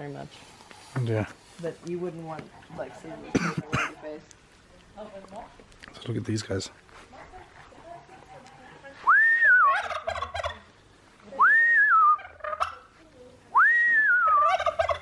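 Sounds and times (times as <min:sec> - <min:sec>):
fowl whistling call: 0:09.1 - 0:10.3, 0:11.4 - 0:12.4, 0:13.6 - 0:15.0
fowl gobbling rattle: 0:09.7 - 0:10.7, 0:12.2 - 0:12.9, 0:14.3 - 0:15.0.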